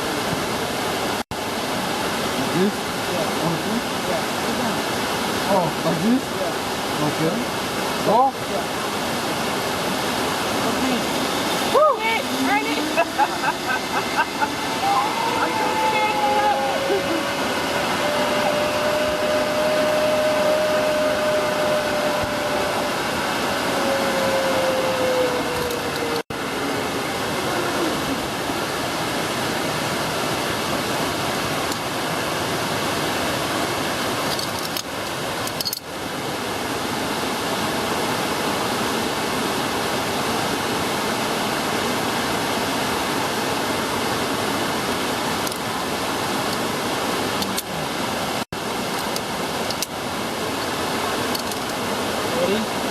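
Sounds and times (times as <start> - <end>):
rushing roar: 10.9 - 28.5
pulley whining along cable: 11.3 - 26.2.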